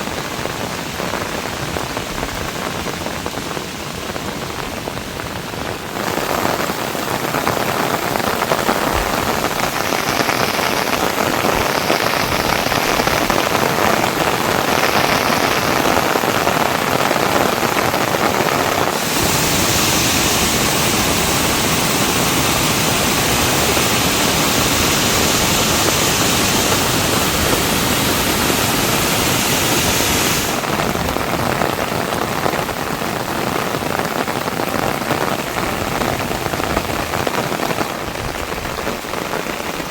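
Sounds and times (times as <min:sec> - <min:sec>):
heavy rain hissing: 0:00.0 - 0:39.9.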